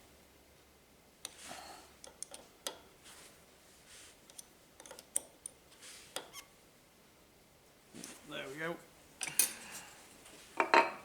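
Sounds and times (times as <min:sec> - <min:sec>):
spanner clicking on metal screws: 0:04.3 - 0:05.6.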